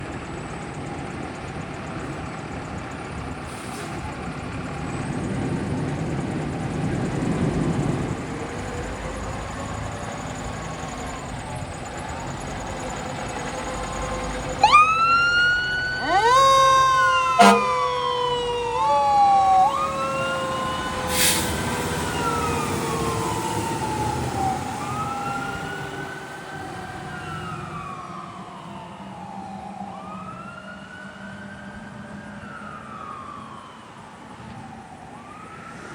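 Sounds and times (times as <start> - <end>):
fire truck engine rumble: 0.0 - 35.9
siren wailing: 8.7 - 35.9
loud horn blasts: 16.0 - 18.0.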